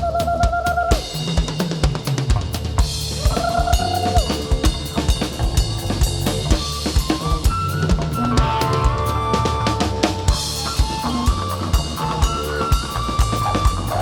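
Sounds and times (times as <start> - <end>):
drum kit: 0.0 - 14.0
live band playing: 0.0 - 14.0.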